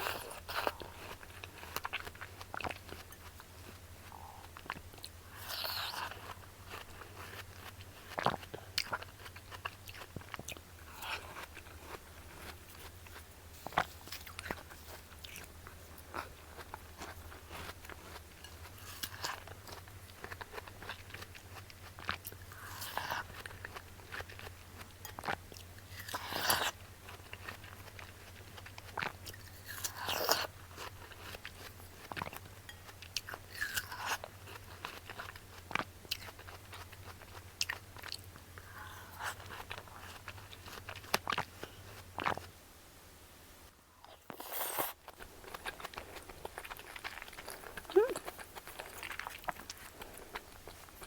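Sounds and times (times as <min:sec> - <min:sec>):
watermelon crunching: 0:00.0 - 0:42.6, 0:44.0 - 0:51.0
wet chewing clicks: 0:44.0 - 0:51.0.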